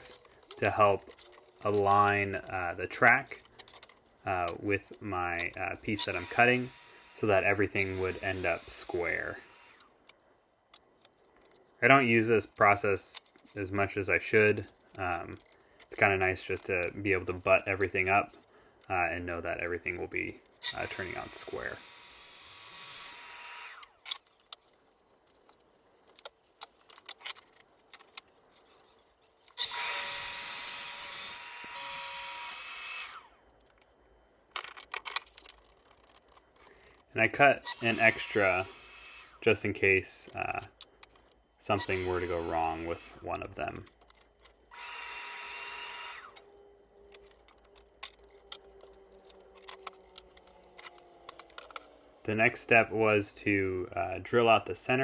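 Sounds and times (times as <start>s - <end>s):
clicks and knocks of wood and tools: 0.0s - 6.3s, 9.8s - 21.3s, 23.7s - 30.0s, 33.4s - 37.2s, 40.2s - 41.6s, 42.9s - 45.0s, 45.8s - 52.4s
track saw cutting wood: 5.4s - 9.9s, 20.6s - 24.0s, 29.6s - 33.3s, 37.5s - 39.4s, 41.7s - 43.4s, 44.7s - 52.9s.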